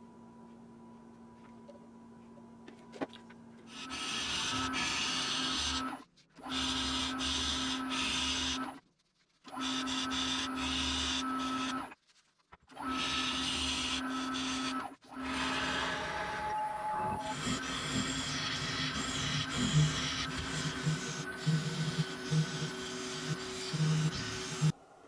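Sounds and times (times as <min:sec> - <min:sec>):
wood lathe humming: 0:03.7 - 0:08.7, 0:09.5 - 0:11.9, 0:12.8 - 0:24.8
tool scraping spinning wood: 0:12.9 - 0:24.8.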